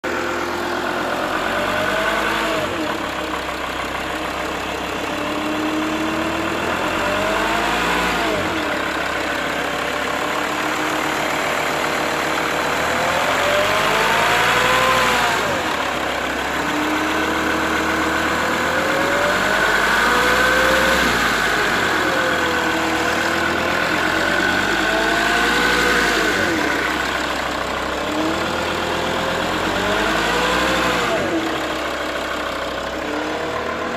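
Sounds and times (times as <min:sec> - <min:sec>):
diesel engine revving: 0:00.0 - 0:33.9.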